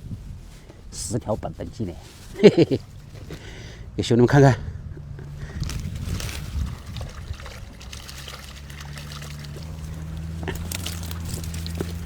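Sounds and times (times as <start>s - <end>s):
small splashes and drips: 5.6s - 12.0s
water trickling and pouring: 6.0s - 12.0s.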